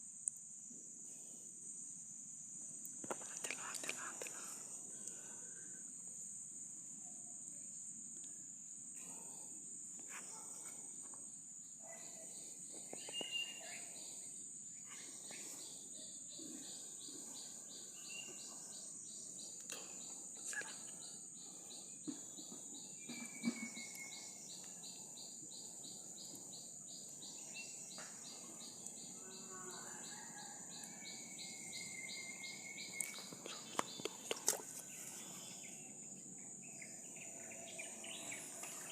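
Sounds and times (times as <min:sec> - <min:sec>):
crickets droning: 0:00.0 - 0:38.9
insect pulsing chirp: 0:01.6 - 0:38.9
bird calls: 0:11.9 - 0:14.2, 0:19.7 - 0:35.9.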